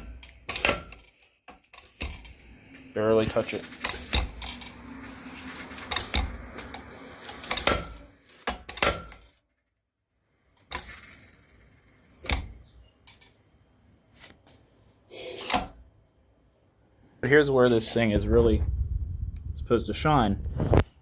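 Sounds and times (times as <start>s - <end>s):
air hissing: 1.8s - 9.0s, 15.1s - 15.7s.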